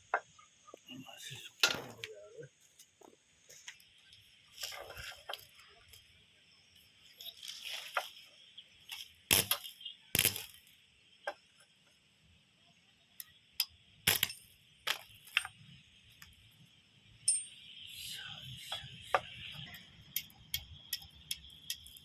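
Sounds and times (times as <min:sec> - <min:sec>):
metal clinks and knocks: 0:17.2 - 0:17.7.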